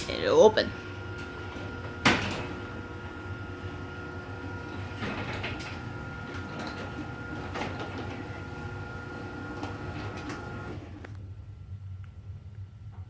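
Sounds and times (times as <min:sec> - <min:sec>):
garage door opener motor whine: 0:00.0 - 0:11.2
door clattering in tracks: 0:01.1 - 0:10.8.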